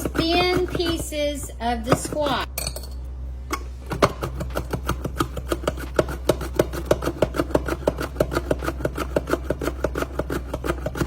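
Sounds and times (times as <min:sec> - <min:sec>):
squash sliced on hand slicer: 0:04.0 - 0:11.0.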